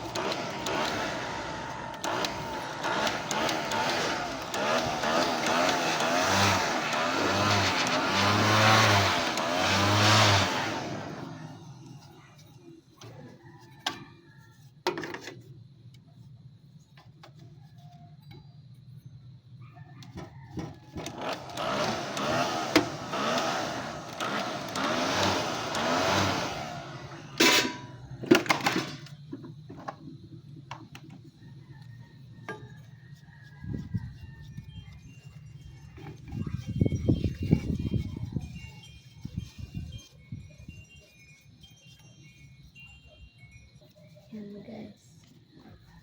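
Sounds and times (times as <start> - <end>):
parts knocking and clicking: 0.0 - 10.2, 20.1 - 33.0
small motor running: 0.0 - 13.7, 20.8 - 46.0.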